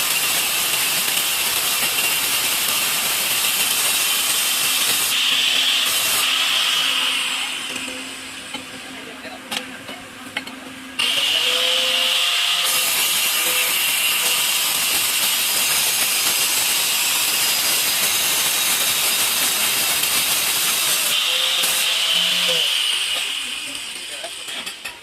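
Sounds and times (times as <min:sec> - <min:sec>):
saw blade cutting tile: 0:00.0 - 0:07.6, 0:11.0 - 0:25.0
tile saw motor whine: 0:03.5 - 0:08.1, 0:11.0 - 0:24.0.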